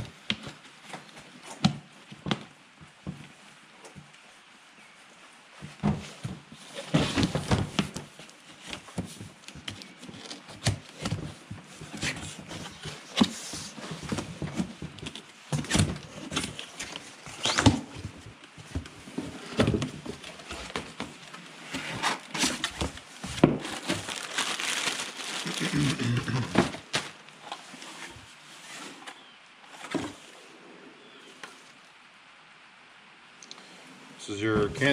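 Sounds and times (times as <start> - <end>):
cardboard box being unpacked: 5.8 - 30.2.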